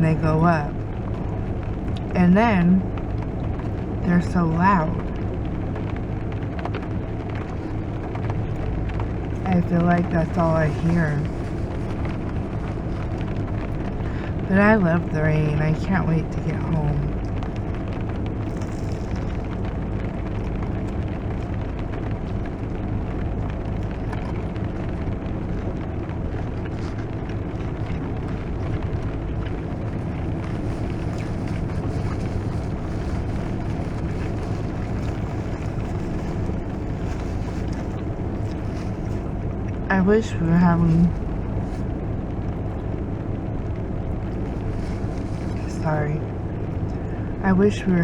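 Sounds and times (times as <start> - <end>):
heavy rain on car roof: 0.0 - 48.0.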